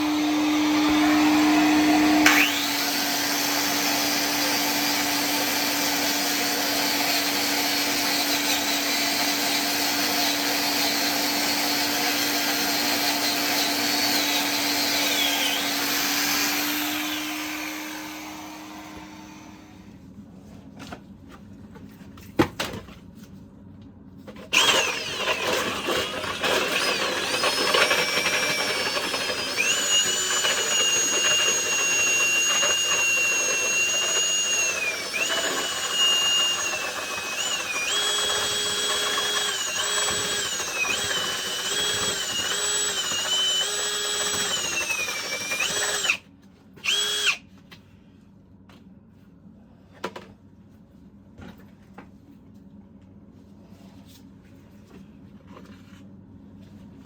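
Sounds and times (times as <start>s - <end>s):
power tool motor whining: 0.0s - 19.7s, 24.5s - 46.2s, 46.8s - 47.4s.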